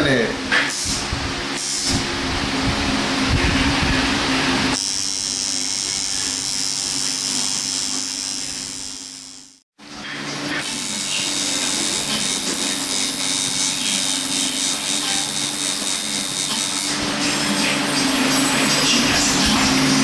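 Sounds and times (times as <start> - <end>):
tattoo machine buzzing: 4.7 - 9.6, 10.5 - 17.7.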